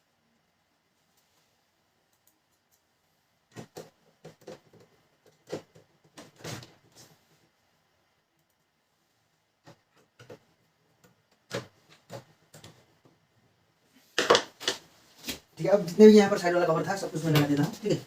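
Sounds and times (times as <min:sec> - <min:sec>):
sharp knocks and clicks of plastic parts: 0:03.5 - 0:06.8, 0:09.6 - 0:13.2, 0:14.2 - 0:14.8.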